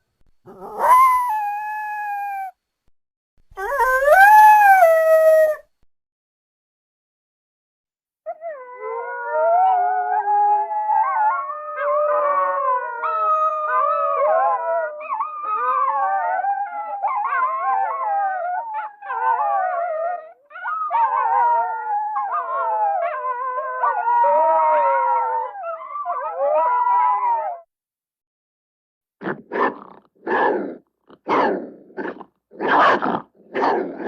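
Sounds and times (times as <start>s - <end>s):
coyotes howling: 8.6s - 27.6s.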